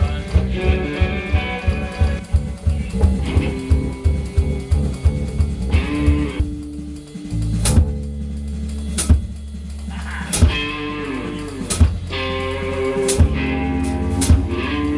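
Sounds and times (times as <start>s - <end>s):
rock band jamming: 0.0s - 14.9s
sharp drum hits: 8.8s - 10.8s, 11.5s - 12.4s, 13.0s - 14.9s.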